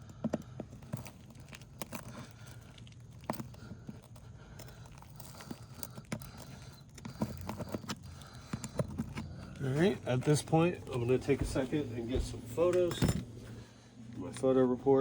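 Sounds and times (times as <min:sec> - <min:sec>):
shingle crinkling and tearing: 0:00.0 - 0:11.4.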